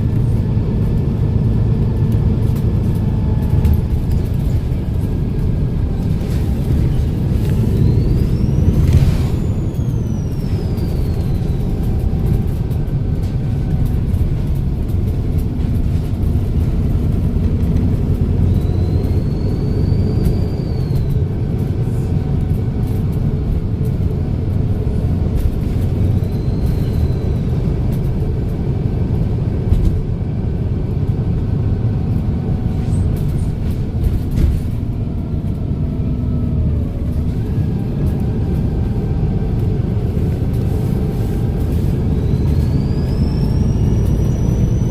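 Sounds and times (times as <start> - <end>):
bus diesel engine rumble: 0.0 - 44.9.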